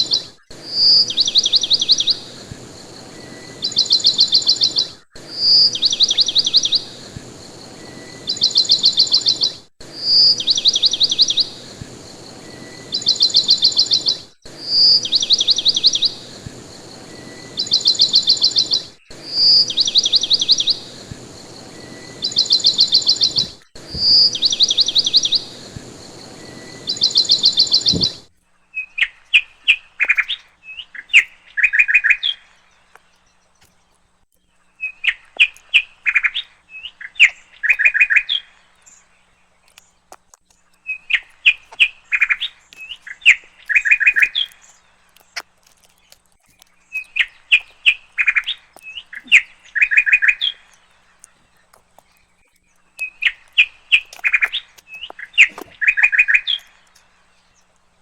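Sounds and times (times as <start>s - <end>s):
higher trilling bird call: 0.0s - 29.0s
background hiss: 0.0s - 58.0s
songbird singing chirps and trills: 0.0s - 58.0s.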